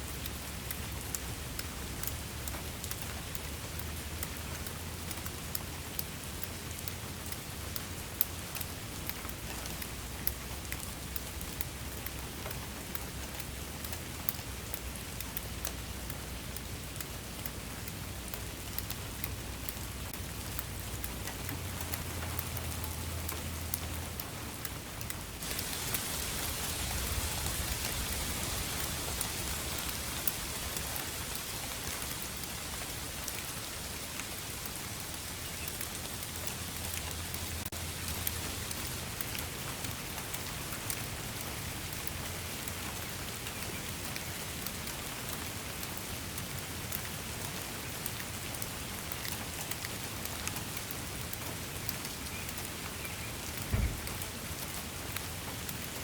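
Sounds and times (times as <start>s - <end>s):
steady rain falling: 0.0s - 56.0s
low thump: 53.7s - 54.2s.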